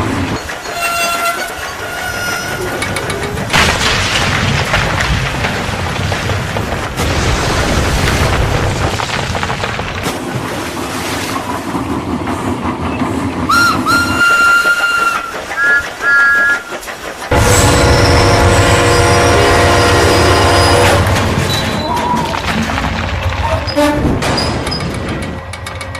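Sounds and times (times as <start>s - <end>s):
train engines rumbling and clattering: 0.0s - 25.9s
steam whistle: 13.5s - 16.7s, 17.3s - 21.1s.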